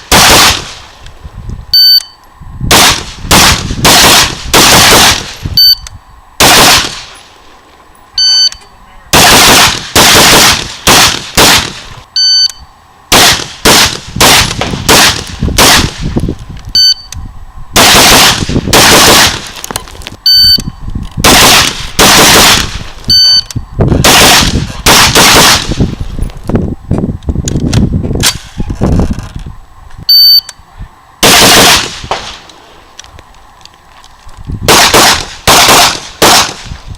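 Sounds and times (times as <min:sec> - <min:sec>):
rifle gunshots: 0:00.0 - 0:00.9, 0:02.7 - 0:05.4, 0:06.4 - 0:07.2, 0:09.1 - 0:11.9, 0:13.1 - 0:16.1, 0:17.8 - 0:19.6, 0:21.2 - 0:22.9, 0:24.0 - 0:25.8, 0:31.2 - 0:32.4, 0:34.7 - 0:36.7
shot timer beep: 0:01.7 - 0:02.2, 0:05.6 - 0:05.9, 0:08.2 - 0:08.7, 0:12.2 - 0:12.7, 0:16.8 - 0:17.2, 0:20.3 - 0:20.8, 0:23.1 - 0:23.6, 0:30.1 - 0:30.6.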